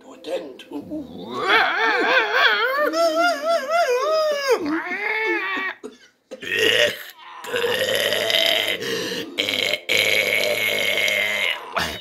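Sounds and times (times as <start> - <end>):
cartoon voice coughing and croaking: 4.8 - 7.1.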